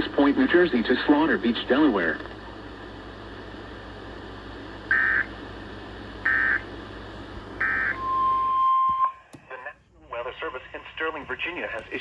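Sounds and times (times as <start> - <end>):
radio hiss: 9.5 - 12.0.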